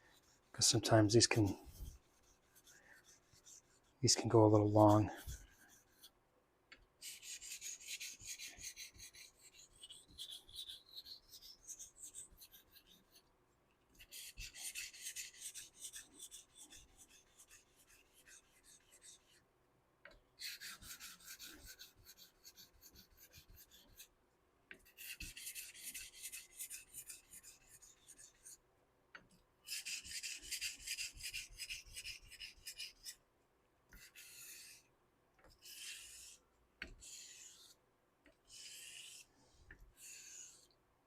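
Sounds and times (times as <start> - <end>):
razor blade scraping on whetstone: 7.0 - 13.2, 34.0 - 34.9, 35.6 - 37.8, 38.5 - 39.3, 40.0 - 40.7.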